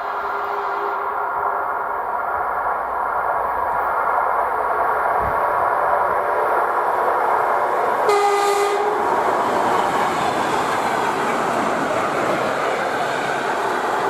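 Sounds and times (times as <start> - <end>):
train horn blast: 0.0 - 1.2, 8.0 - 9.0
train passing with rumble: 0.0 - 14.0.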